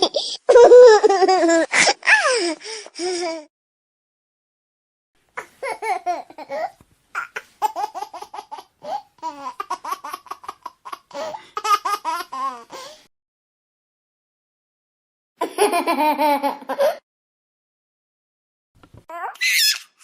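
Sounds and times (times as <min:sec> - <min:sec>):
baby laughing: 0:00.0 - 0:03.4, 0:05.4 - 0:12.9, 0:15.4 - 0:17.0, 0:19.1 - 0:20.0.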